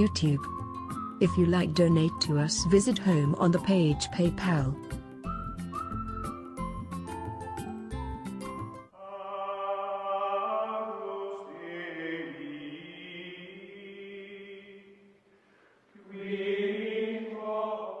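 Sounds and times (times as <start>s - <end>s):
slow vocal chant: 9.0s - 15.2s, 15.9s - 18.0s.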